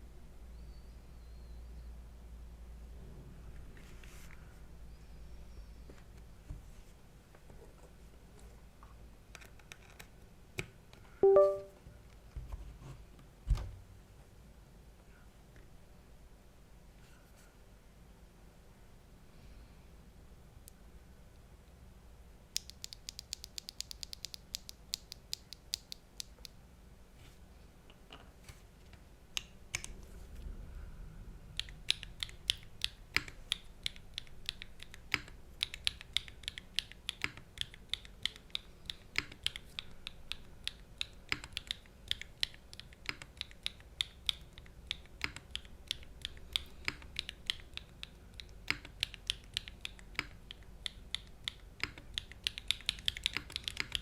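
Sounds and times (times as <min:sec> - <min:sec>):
typing on mechanical keyboard: 0:31.6 - 0:54.0.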